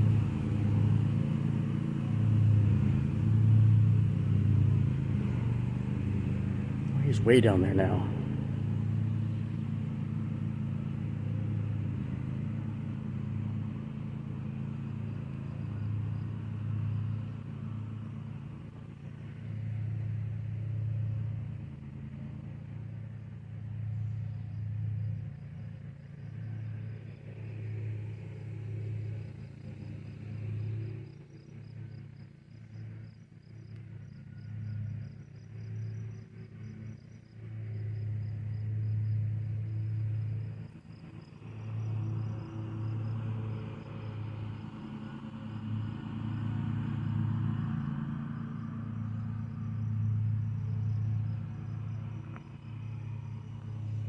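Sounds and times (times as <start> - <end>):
distant lawn mower engine: 0.0 - 54.0.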